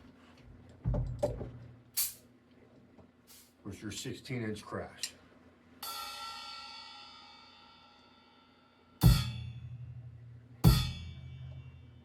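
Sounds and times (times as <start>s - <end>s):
bass drum thump: 0.8s - 1.7s
crash cymbal ringing: 5.8s - 9.8s, 10.6s - 11.9s.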